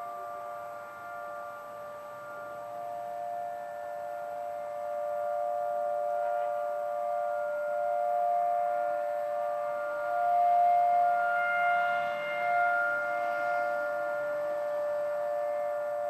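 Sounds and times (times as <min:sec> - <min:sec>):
warning sirens steady tone: 0:00.0 - 0:16.0.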